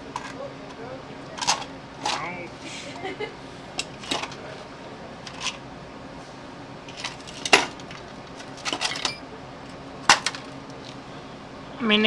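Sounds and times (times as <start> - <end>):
metal tools clinking: 8.6 - 9.2.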